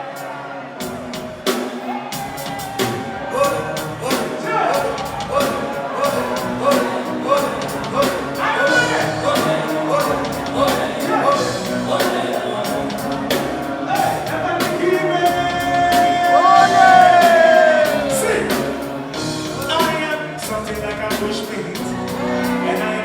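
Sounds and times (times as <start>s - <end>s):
live band music: 0.0s - 23.0s
person singing: 0.0s - 23.0s.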